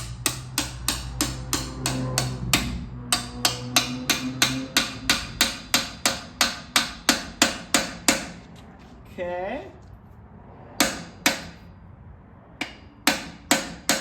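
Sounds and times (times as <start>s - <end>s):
hammer striking metal screwdriver: 0.0s - 8.3s.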